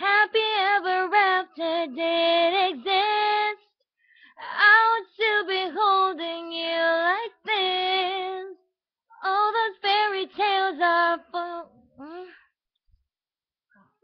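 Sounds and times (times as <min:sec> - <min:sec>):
young woman singing: 0:00.0 - 0:03.6, 0:04.4 - 0:08.6, 0:09.2 - 0:12.2.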